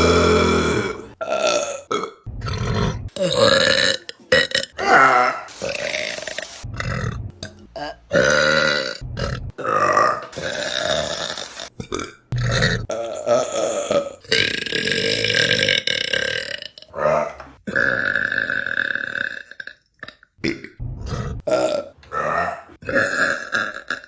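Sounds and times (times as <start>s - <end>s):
women burping: 0.0s - 5.5s.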